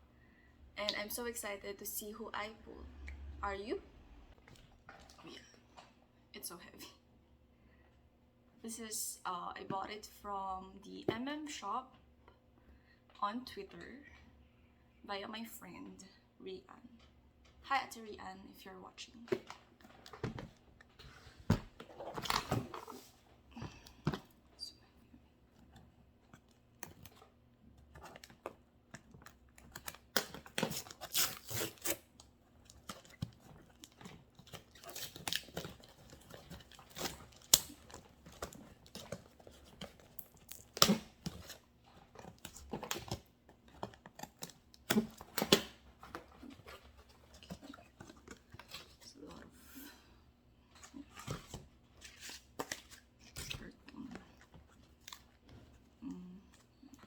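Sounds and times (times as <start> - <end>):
parcel packaging tearing and crinkling: 26.8 - 49.0.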